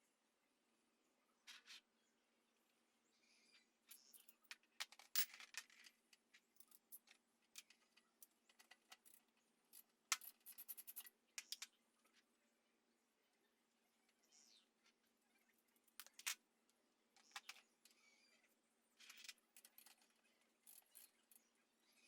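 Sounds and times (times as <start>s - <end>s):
metal tools clinking: 19.0s - 21.5s.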